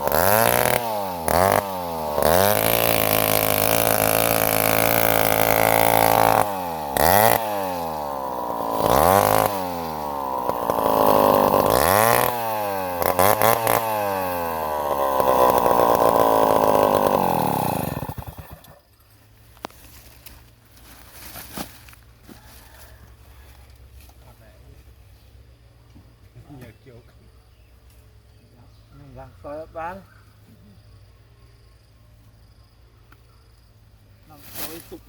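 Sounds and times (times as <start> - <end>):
chainsaw engine revving: 0.0 - 18.9.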